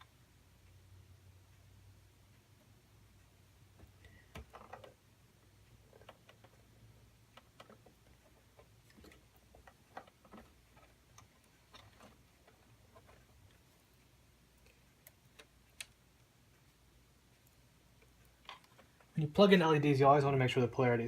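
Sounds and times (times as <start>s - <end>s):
low room hum: 0.0s - 21.0s
clicks of plastic connectors: 14.6s - 16.0s.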